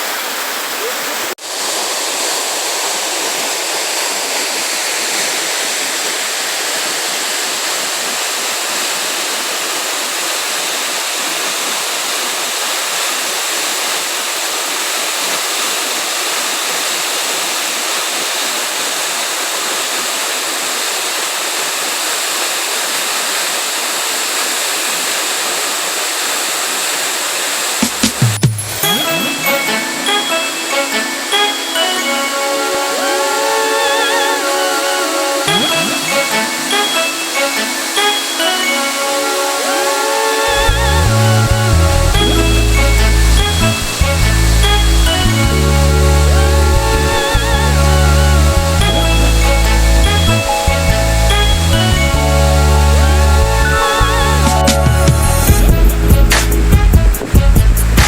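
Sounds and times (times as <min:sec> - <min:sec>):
waterfall roaring: 0:00.0 - 0:58.0
low bumps: 0:40.5 - 0:52.3.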